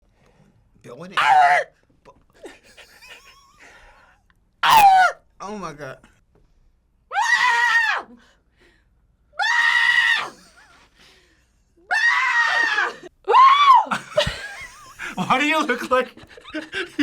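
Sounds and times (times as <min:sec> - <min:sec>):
fox screaming calls: 0:01.2 - 0:01.7, 0:04.6 - 0:05.2, 0:07.2 - 0:08.0, 0:09.4 - 0:10.3, 0:11.9 - 0:13.8.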